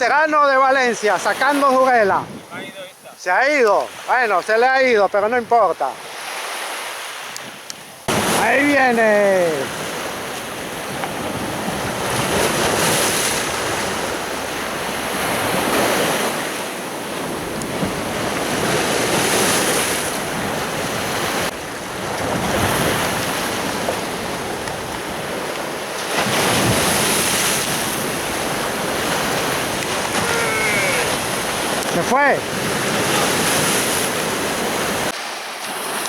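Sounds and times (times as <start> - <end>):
surf breaking on shore: 0.0 - 36.0
wind on microphone: 2.0 - 2.8.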